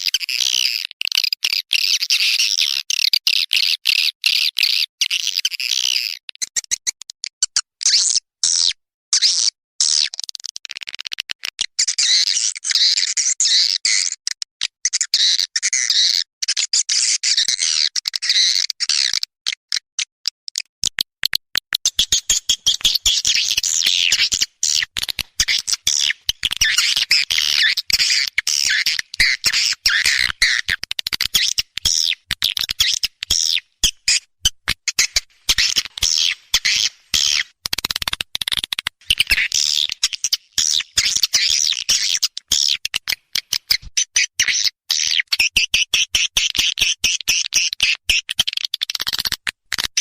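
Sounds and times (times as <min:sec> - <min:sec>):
sharp clicks: 0:20.2 - 0:23.0
high twittering bird chirps: 0:21.8 - 0:34.2.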